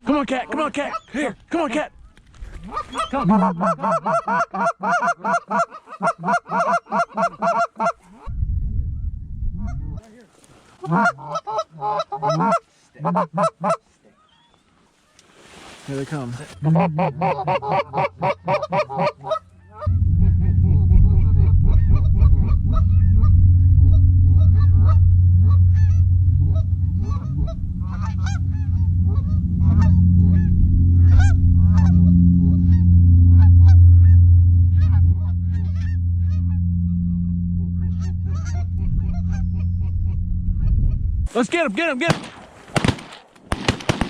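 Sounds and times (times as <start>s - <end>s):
geese honking: 2.7s - 8.3s, 10.8s - 13.9s, 16.6s - 40.4s
loud steady low rumble: 8.3s - 10.0s, 19.7s - 41.3s.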